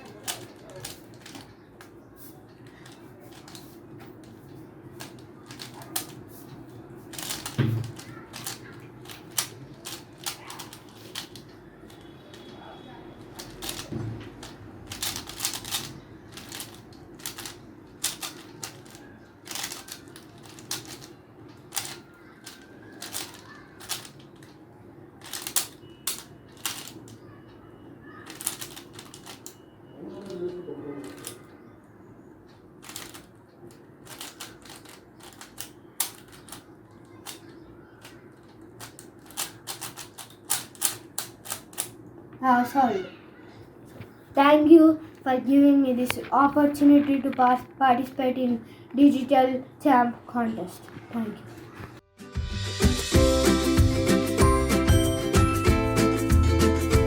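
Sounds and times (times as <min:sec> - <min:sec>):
puzzle cube plastic clicks: 0:00.0 - 0:12.6, 0:13.2 - 0:24.6, 0:25.2 - 0:27.3, 0:28.2 - 0:29.6, 0:31.0 - 0:31.5, 0:32.8 - 0:42.0.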